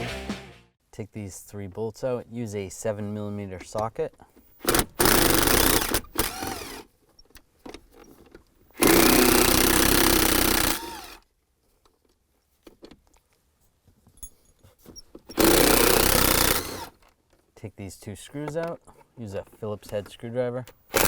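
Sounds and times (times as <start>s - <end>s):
power driver whirring: 4.4s - 6.9s, 8.6s - 11.2s, 15.3s - 17.0s, 20.7s - 21.0s.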